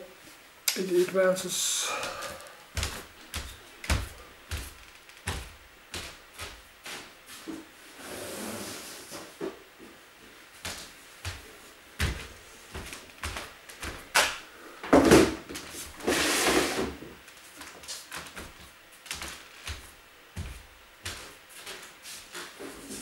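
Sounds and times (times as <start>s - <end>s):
scraping or sliding noise: 7.9s - 9.4s, 16.0s - 17.0s
boxes knocking and thumping: 14.9s - 15.5s.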